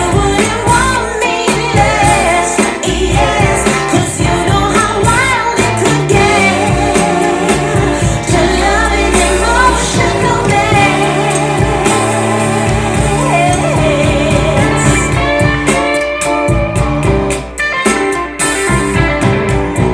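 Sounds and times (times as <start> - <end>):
person singing: 0.0 - 15.9
pop band playing: 0.0 - 19.9.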